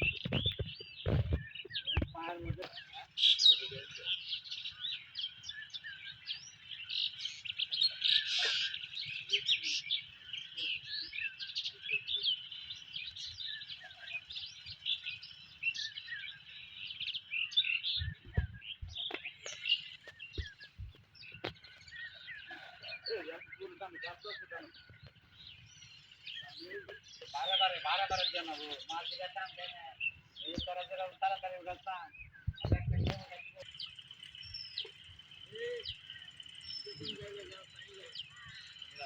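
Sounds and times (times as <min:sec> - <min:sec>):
small birds chirping: 0:00.0 - 0:39.0
dull low knocks: 0:17.9 - 0:19.2.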